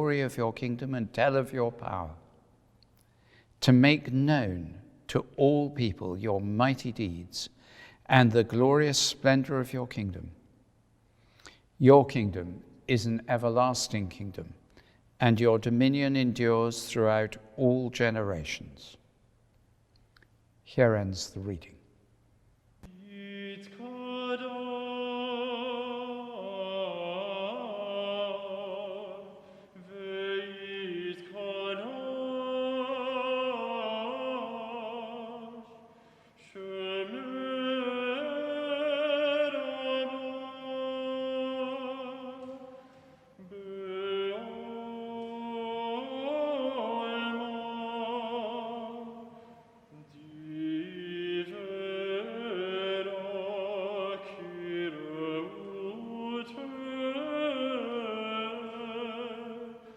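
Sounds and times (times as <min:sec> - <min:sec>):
voices singing a slow hymn: 0:22.8 - 0:59.9.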